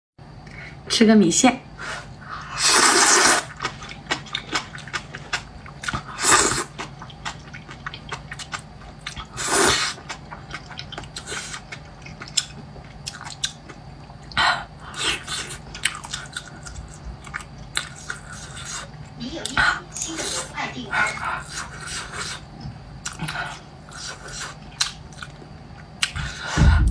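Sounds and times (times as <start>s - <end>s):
wet chewing and biting: 2.3s - 19.6s, 21.0s - 26.4s
noodle slurping: 2.4s - 12.4s.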